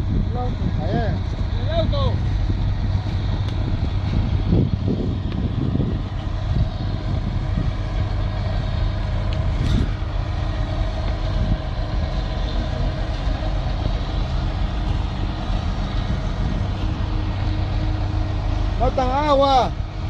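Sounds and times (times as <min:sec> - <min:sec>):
truck engine running: 0:00.0 - 0:20.0.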